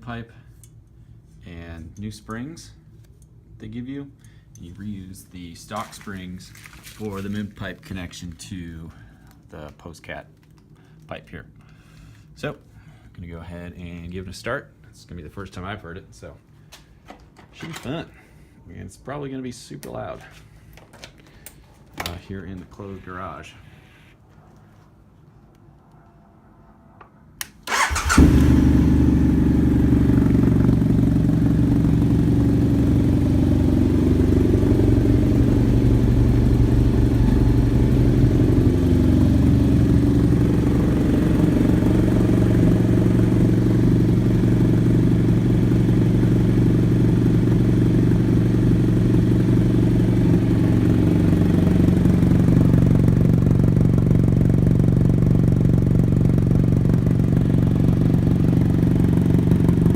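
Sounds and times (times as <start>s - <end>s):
motorcycle starter cranking: 27.7s - 30.9s
motorcycle engine idling: 27.7s - 59.9s.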